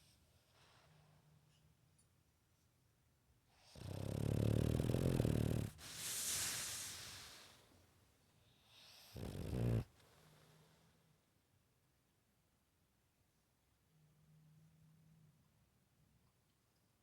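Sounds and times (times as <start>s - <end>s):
dog snoring: 3.5s - 7.4s, 8.7s - 9.9s.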